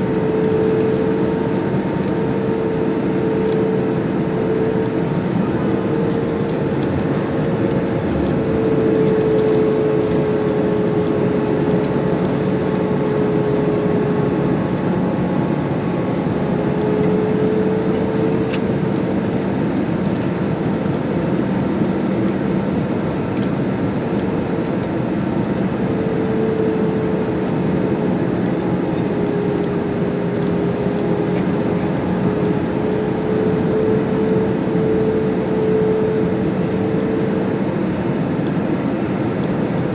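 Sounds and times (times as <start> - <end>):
airplane cabin rush: 0.0 - 39.9
droning engine tone: 0.0 - 39.9.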